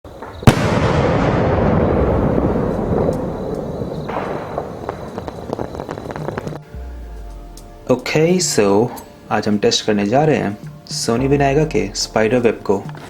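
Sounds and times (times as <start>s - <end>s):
firework bursting: 0.1s - 7.8s.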